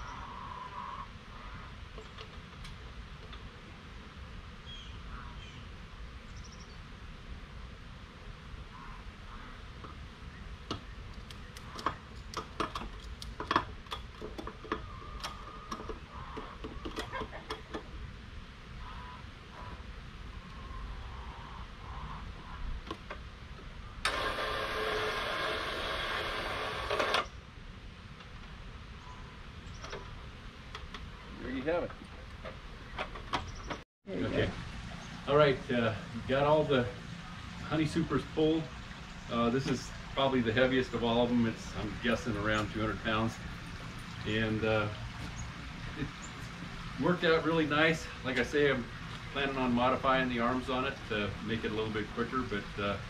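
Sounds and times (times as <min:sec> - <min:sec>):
faint bird chirps: 0:04.6 - 0:05.7, 0:06.3 - 0:06.8
motor stopping click: 0:24.0 - 0:27.3
small motor running: 0:24.1 - 0:27.3.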